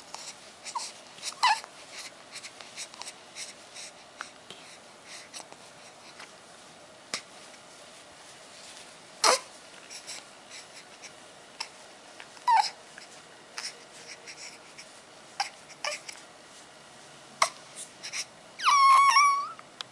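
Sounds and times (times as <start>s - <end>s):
baby squeak: 18.6s - 19.6s.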